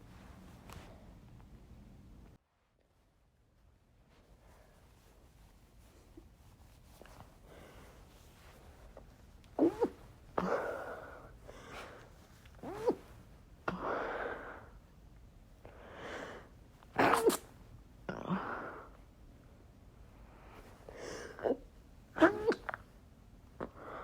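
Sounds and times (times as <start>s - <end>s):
person stifling sneezes: 9.6s - 11.1s, 12.6s - 13.1s, 17.0s - 17.5s, 22.2s - 22.8s
person breathing: 10.4s - 12.2s, 15.7s - 16.6s.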